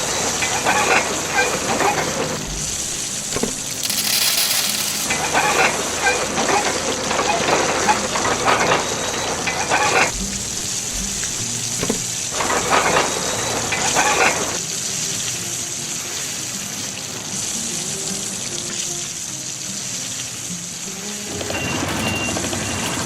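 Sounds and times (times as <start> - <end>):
faint background music: 5.8 - 23.0.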